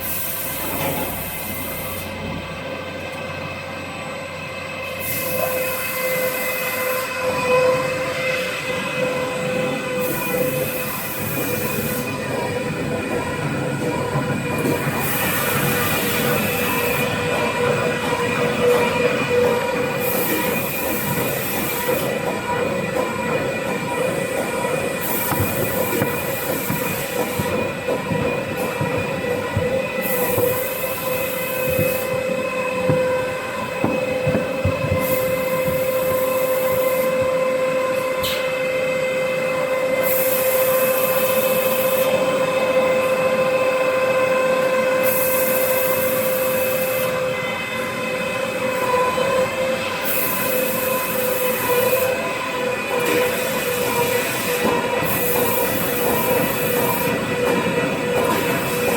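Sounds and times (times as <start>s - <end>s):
saw high hiss: 0.0s - 2.2s, 4.9s - 7.2s, 24.5s - 38.6s.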